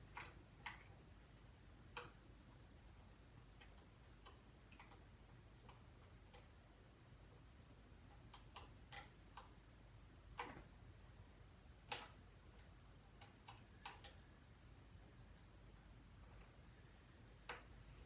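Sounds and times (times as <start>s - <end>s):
small clicks and taps of tools: 1.9s - 2.2s, 11.8s - 14.2s, 17.4s - 17.8s.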